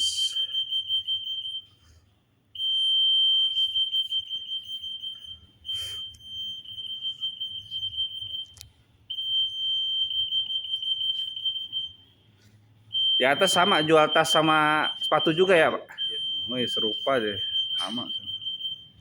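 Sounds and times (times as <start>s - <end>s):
high-pitched alarm tone: 0.0s - 1.6s, 2.6s - 8.4s, 12.9s - 19.0s.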